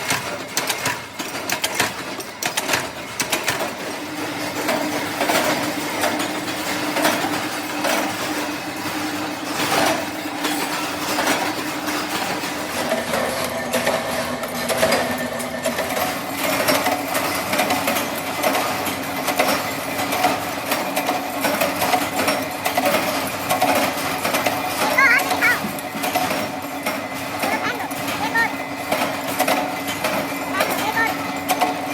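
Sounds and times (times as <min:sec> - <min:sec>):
clattering clicks and knocks: 0:00.0 - 0:31.9
steady motor hum: 0:00.0 - 0:31.9.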